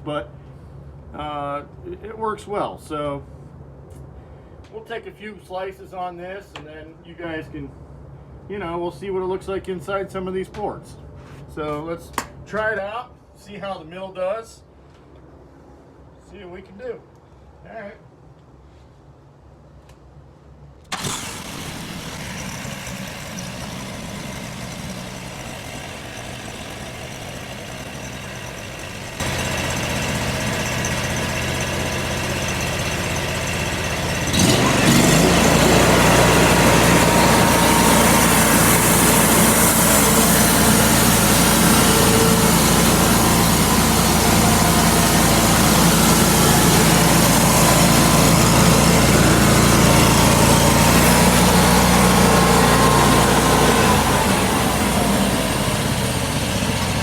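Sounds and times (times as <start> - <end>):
small gasoline engine running: 20.9 - 57.0.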